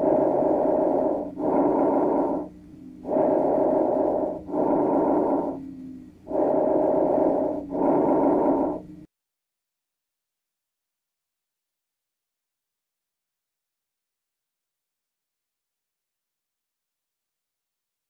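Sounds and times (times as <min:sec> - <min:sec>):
breathing through stethoscope: 0:00.0 - 0:09.1.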